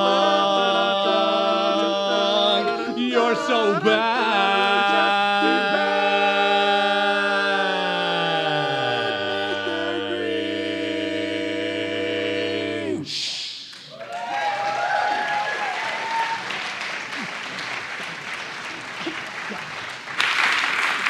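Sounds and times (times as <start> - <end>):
quartet singing a cappella: 0.0 - 13.9
applause: 13.8 - 21.0.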